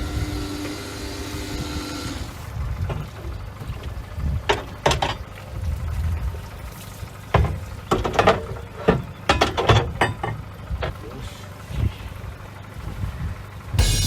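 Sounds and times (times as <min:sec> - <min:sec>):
low steady rumble: 0:02.4 - 0:09.2.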